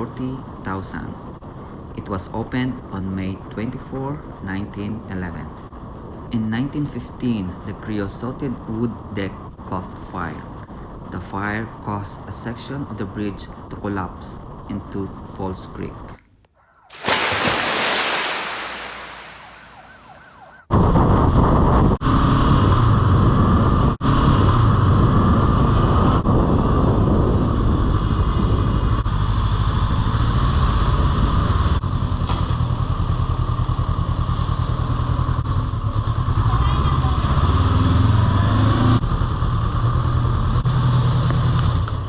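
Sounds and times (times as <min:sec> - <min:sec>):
road and wind noise: 0:00.0 - 0:11.9, 0:19.8 - 0:42.0
rushing hiss: 0:16.9 - 0:20.2.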